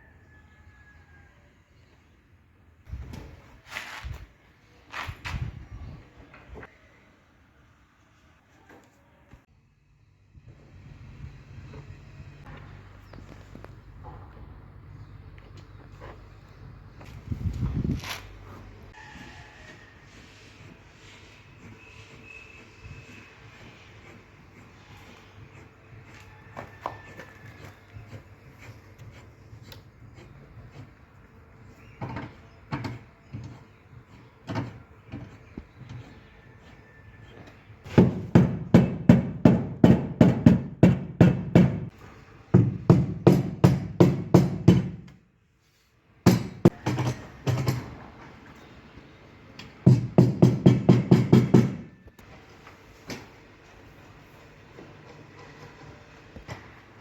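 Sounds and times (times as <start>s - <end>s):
hammer tapping sheet metal: 49.8s - 52.0s.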